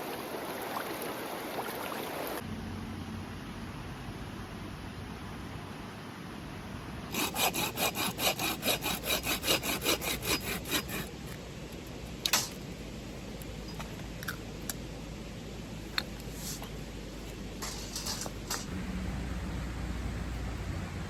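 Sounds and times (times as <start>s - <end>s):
hand saw cutting wood: 7.1s - 11.2s.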